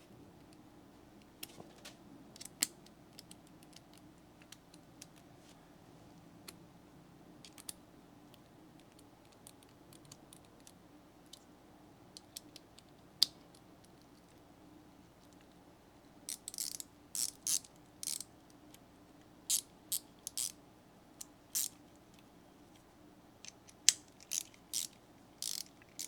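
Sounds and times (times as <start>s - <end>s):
small tools clicking and tapping: 23.4s - 26.0s.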